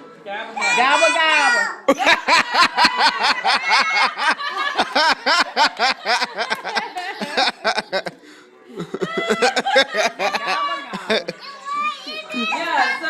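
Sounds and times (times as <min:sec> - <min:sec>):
person laughing: 0:01.9 - 0:08.2.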